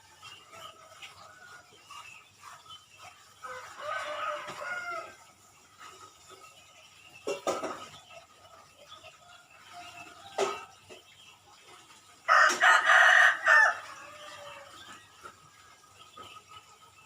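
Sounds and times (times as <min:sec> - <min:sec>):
small birds chirping: 0:00.0 - 0:17.0
rooster crowing: 0:03.4 - 0:05.2, 0:12.3 - 0:14.7.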